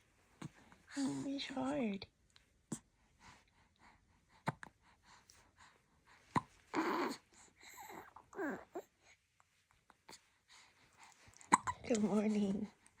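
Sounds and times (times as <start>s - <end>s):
baby hiccuping: 11.4s - 12.0s.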